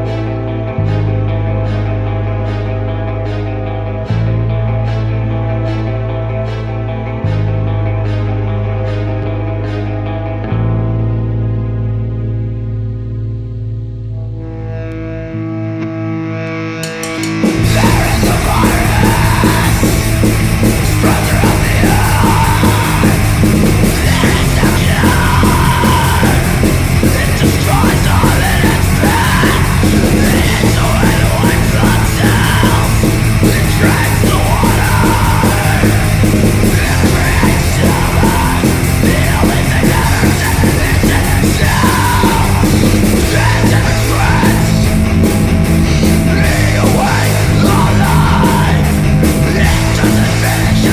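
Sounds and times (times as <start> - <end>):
bass: 0.0 - 50.9
distorted guitar: 0.0 - 50.9
drums: 16.6 - 50.9
person yelling vocals: 20.9 - 44.9, 46.2 - 50.9.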